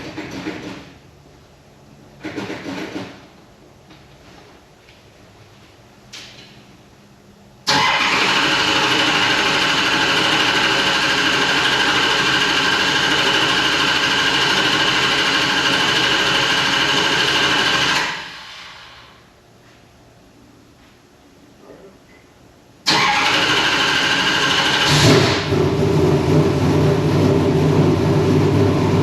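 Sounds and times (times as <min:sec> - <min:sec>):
engine running: 0:07.6 - 0:19.2, 0:22.9 - 0:29.0.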